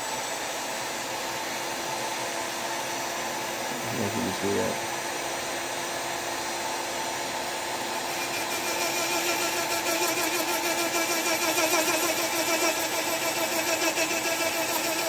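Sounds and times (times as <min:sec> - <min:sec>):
rotary tool whine: 0:00.0 - 0:15.0.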